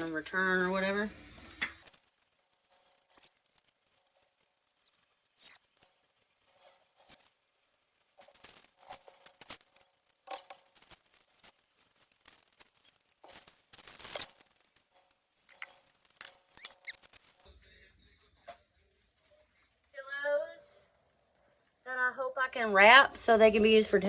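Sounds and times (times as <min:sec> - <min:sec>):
rustling: 0:01.4 - 0:17.5
objects clicking and knocking: 0:01.5 - 0:17.5.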